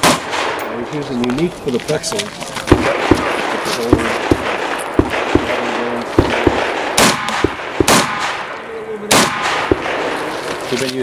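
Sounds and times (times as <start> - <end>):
rifle shots: 0.0 - 0.9, 2.7 - 10.6
rifle bursts: 2.7 - 10.5.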